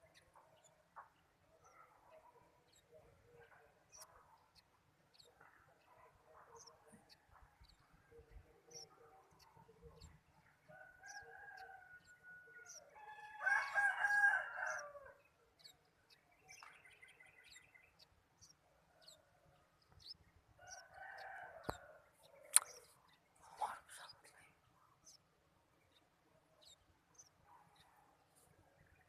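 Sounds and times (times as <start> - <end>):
small birds chirping: 0.0 - 29.0
rooster crowing: 13.0 - 15.1.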